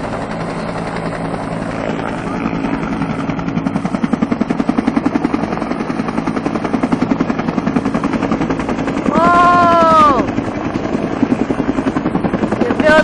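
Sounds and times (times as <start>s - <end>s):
helicopter engine hum: 0.0s - 13.0s
helicopter rotor chopping: 0.0s - 13.0s
person exclaiming: 9.1s - 10.3s, 12.7s - 13.0s.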